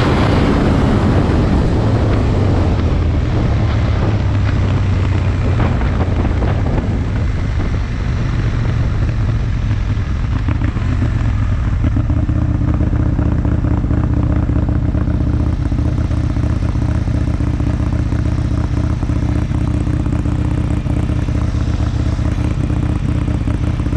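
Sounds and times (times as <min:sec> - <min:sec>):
wind rushing noise: 0:00.0 - 0:11.2
motorcycle engine running: 0:00.0 - 0:23.9.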